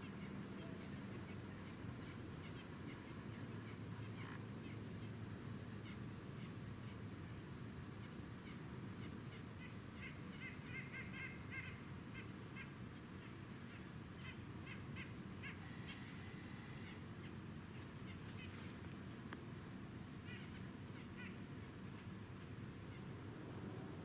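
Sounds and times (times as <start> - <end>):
distant birds honking: 10.4 - 18.9.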